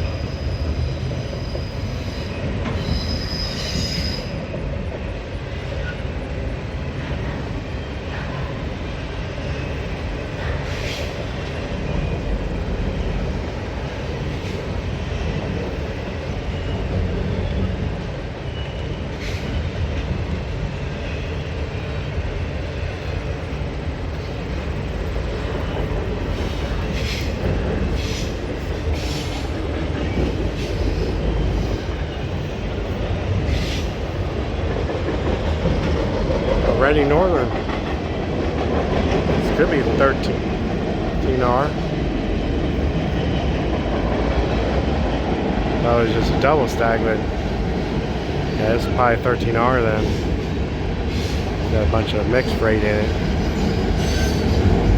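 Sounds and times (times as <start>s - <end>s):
train wheels rumbling on rails: 0.0s - 54.9s
faint wheel squeal: 0.1s - 4.4s.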